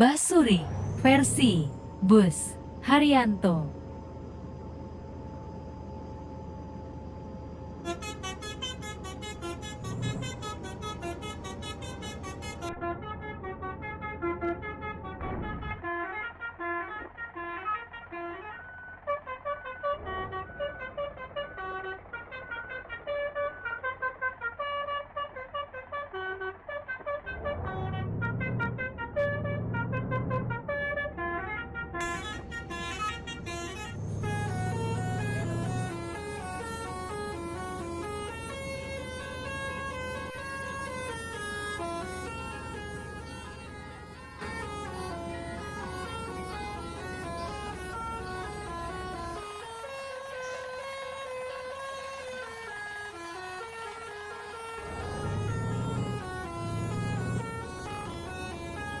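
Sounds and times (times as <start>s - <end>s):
low hum: 0.1s - 16.2s
musical air horn melody: 7.8s - 50.6s, 52.4s - 59.0s.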